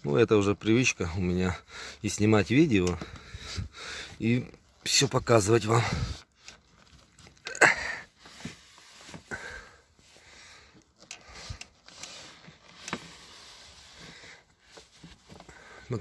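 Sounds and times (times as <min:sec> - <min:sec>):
rag rubbing window channel: 0:11.2 - 0:15.8.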